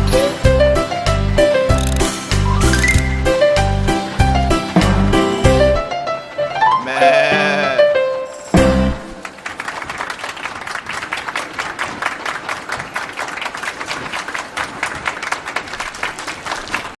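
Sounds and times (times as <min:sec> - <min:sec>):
applause: 0:09.2 - 0:17.0.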